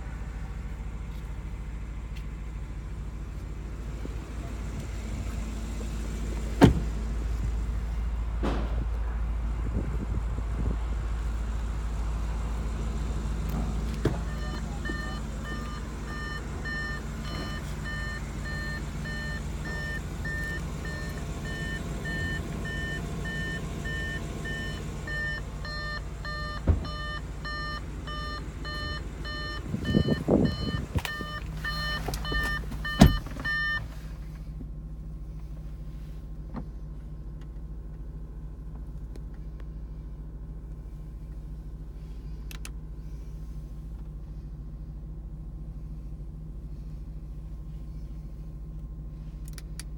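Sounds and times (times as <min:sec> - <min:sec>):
low steady hum: 0:00.0 - 0:49.9
car warning chime beeping: 0:14.2 - 0:33.9.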